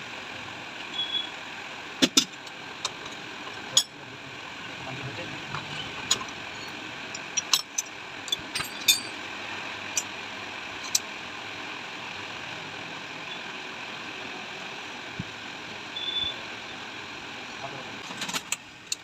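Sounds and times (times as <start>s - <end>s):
metal tools clicking: 7.2s - 9.2s.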